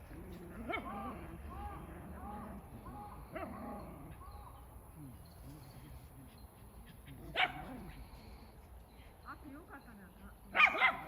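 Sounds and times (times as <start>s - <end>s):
dog barking: 7.3s - 7.8s, 10.6s - 11.0s.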